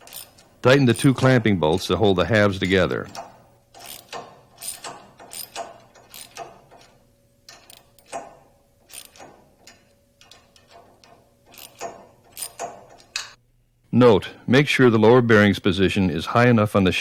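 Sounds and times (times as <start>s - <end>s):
ratchet wrench clicking: 0.0s - 13.4s.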